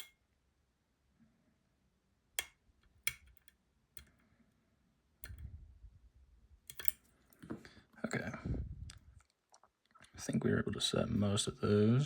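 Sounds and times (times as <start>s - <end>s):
lock picks clicking in a lock: 2.4s - 4.1s, 6.7s - 7.0s.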